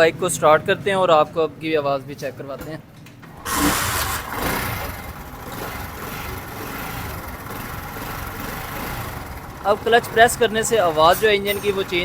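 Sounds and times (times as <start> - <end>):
motorcycle engine idling: 3.4 - 12.0
timing chain noise: 3.4 - 12.0.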